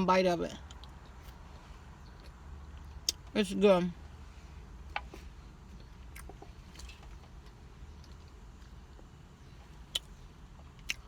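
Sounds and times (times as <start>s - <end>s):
low steady hum: 0.0s - 11.0s
mouth chewing sounds: 9.7s - 11.0s.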